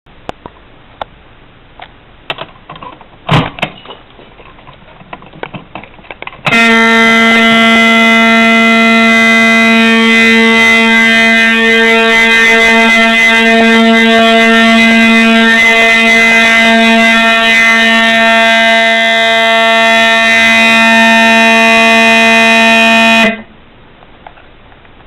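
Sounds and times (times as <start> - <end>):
fire alarm horn: 6.5 - 23.5.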